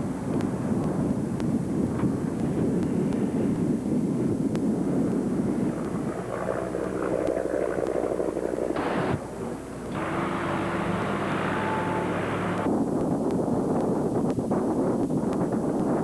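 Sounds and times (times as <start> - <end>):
wind noise on microphone: 0.0 - 16.0
steady hum: 2.4 - 12.7.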